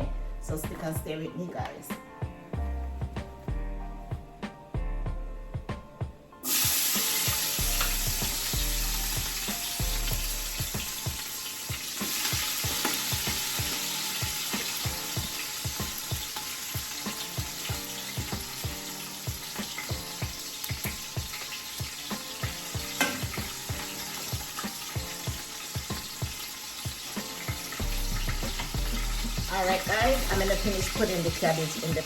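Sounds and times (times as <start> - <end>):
faint background music: 0.0 - 32.0
food sizzling in hot oil: 6.4 - 32.0.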